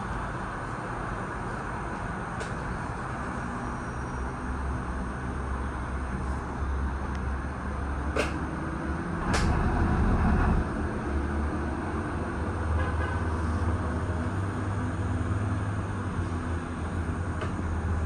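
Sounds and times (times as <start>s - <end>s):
gondola cabin rumbling along cable: 6.0s - 18.0s.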